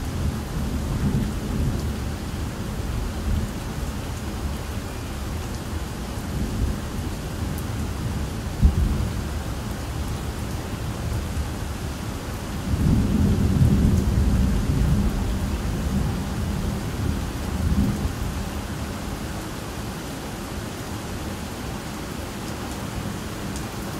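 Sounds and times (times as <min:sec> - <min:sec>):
low rumble of thunder: 0:00.0 - 0:04.6, 0:05.3 - 0:09.7, 0:10.3 - 0:18.7
steady rain falling: 0:00.0 - 0:23.9.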